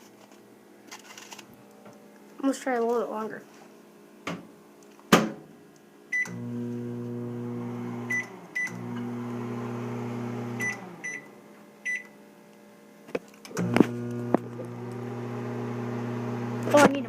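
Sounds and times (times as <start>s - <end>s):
microwave oven humming: 6.1s - 12.0s, 13.5s - 17.0s
keypad beeps: 11.9s - 12.1s.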